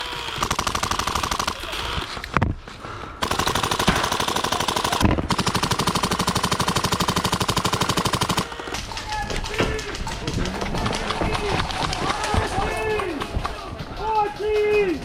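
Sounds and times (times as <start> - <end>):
airsoft guns firing full auto: 0.0 - 2.4, 3.2 - 10.1.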